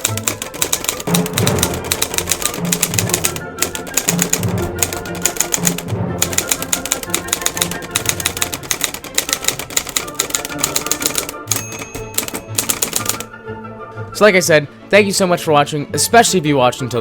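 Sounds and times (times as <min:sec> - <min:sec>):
manual typewriter typing: 0:00.0 - 0:13.3
music playing: 0:00.0 - 0:17.0.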